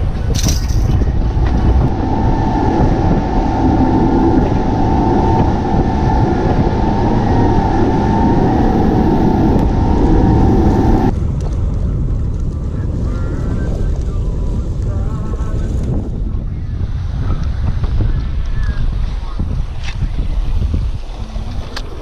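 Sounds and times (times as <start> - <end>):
heavy wind: 0.0 - 22.0
boat engine whining: 0.9 - 11.1
water rushing: 1.0 - 11.1.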